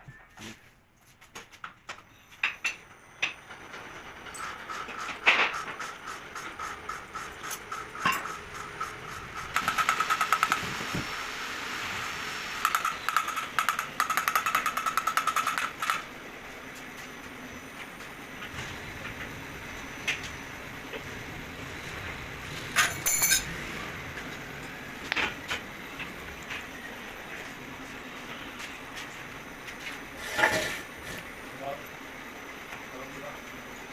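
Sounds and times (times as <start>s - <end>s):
rapid even clicking: 5.6s - 11.0s, 12.6s - 16.1s.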